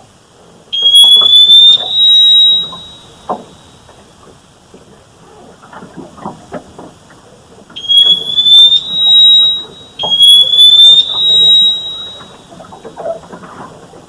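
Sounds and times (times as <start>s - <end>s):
high rising tone: 0.8s - 3.5s, 7.8s - 12.5s.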